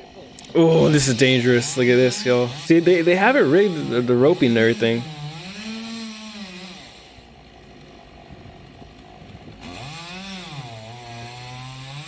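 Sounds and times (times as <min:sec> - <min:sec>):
chainsaw revving while cutting: 0:00.6 - 0:07.5, 0:09.5 - 0:12.0.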